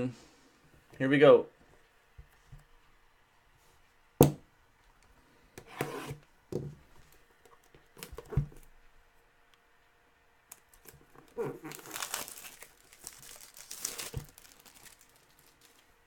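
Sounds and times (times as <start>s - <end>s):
cardboard rubbing and sliding: 5.7s - 6.2s.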